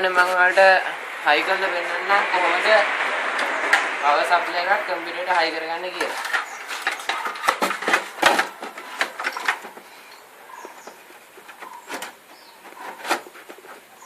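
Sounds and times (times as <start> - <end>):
faint bird chirps: 10.0 - 11.0.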